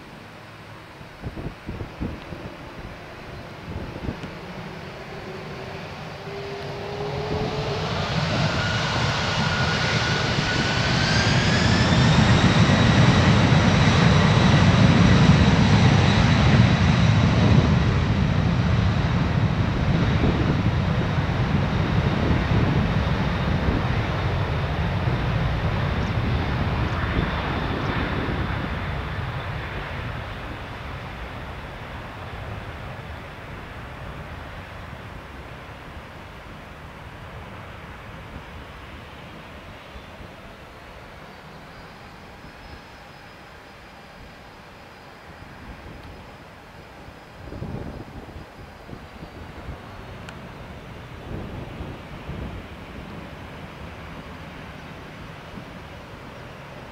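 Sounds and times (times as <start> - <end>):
jet engines spooling up: 2.3 - 35.6.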